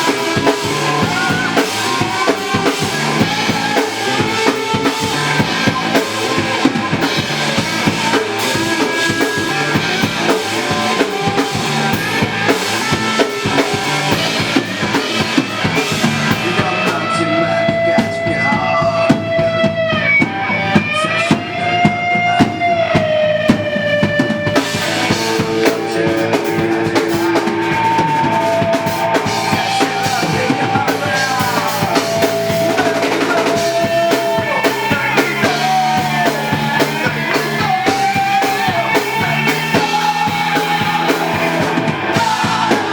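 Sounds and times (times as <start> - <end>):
live rock band playing: 0.0 - 42.9
drum kit hits: 21.4 - 42.9.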